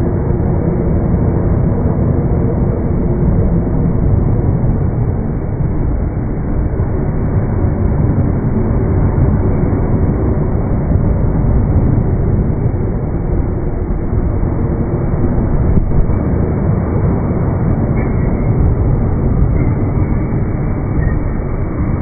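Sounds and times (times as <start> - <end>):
electric train low rumble: 0.0 - 22.0.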